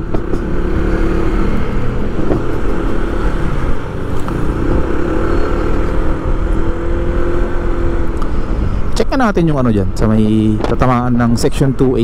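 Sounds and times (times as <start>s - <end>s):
vehicle engine running: 0.0s - 8.9s
road and wind noise: 0.0s - 12.0s.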